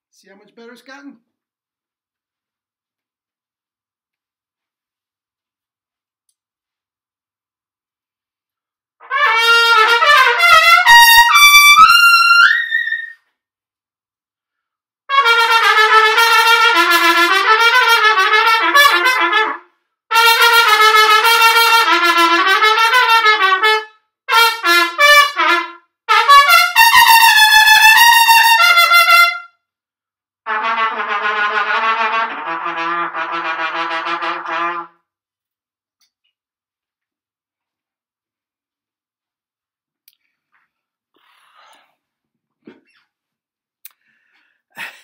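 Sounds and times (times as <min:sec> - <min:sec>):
solo trumpet fast runs: 0:15.1 - 0:29.5.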